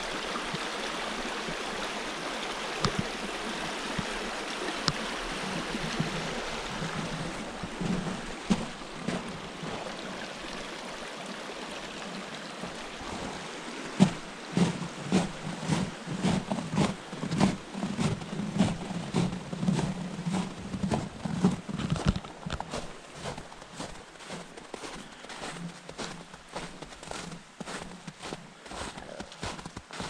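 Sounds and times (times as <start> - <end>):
stream water running: 0.0 - 30.0
footsteps in snow: 5.4 - 10.0, 12.7 - 30.0.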